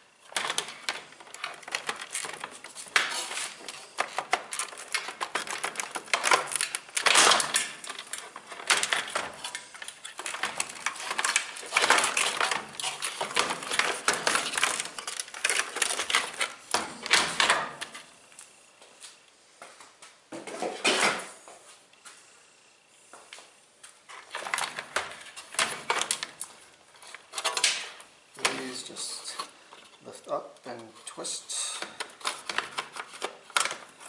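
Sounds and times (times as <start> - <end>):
plastic and metal parts clattering: 0.2 - 18.1, 24.1 - 34.0.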